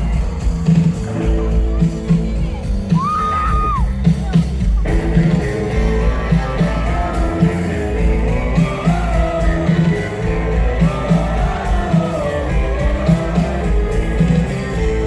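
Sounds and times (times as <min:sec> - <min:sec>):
bass guitar: 0:00.0 - 0:15.0
drums: 0:00.0 - 0:15.0
electric guitar: 0:04.8 - 0:15.0
person singing: 0:05.6 - 0:15.0.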